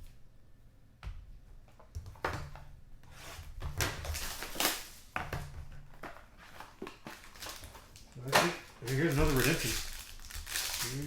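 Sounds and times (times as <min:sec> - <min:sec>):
trading cards rustling and sliding: 0:06.4 - 0:11.0.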